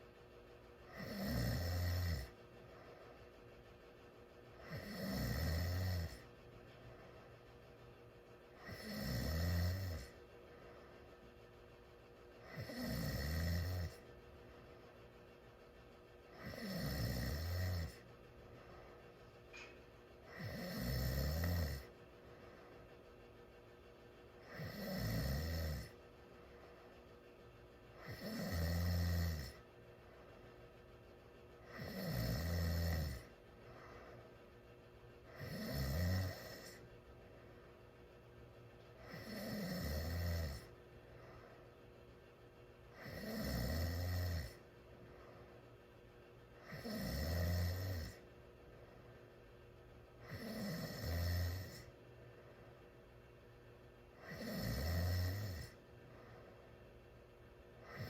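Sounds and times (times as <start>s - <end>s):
person snoring: 0.9s - 2.4s, 4.6s - 6.2s, 8.6s - 10.2s, 12.4s - 14.0s, 16.4s - 18.0s, 20.3s - 21.9s, 24.4s - 26.0s, 28.0s - 29.6s, 31.7s - 33.3s, 35.3s - 36.8s, 39.0s - 40.7s, 43.0s - 44.6s, 46.6s - 48.2s, 50.2s - 51.9s, 54.2s - 55.8s.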